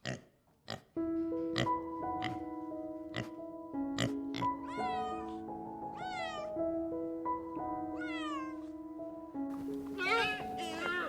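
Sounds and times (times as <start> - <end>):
soft background music: 0.0 - 11.0
cat meowing: 4.6 - 6.6, 7.9 - 8.7, 9.9 - 11.0.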